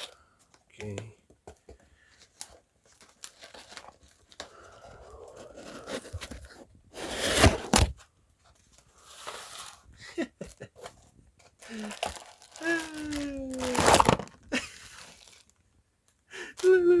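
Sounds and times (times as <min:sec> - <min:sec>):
packaging rustling and crinkling: 0:01.5 - 0:09.9, 0:10.8 - 0:15.6
packaging tearing rip: 0:07.0 - 0:08.0, 0:11.8 - 0:14.4.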